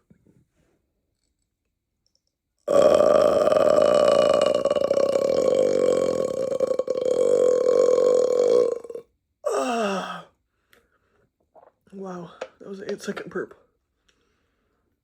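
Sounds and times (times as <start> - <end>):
long steady burp: 2.7 - 10.1.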